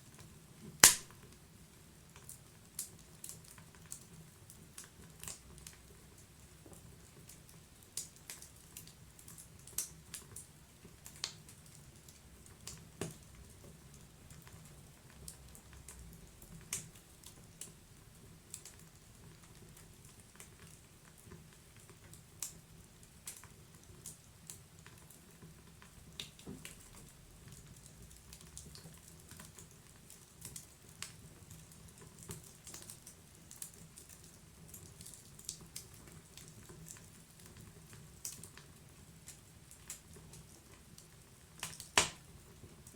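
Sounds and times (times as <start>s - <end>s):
burning wood popping and snapping: 0.6s - 1.4s, 39.3s - 42.4s.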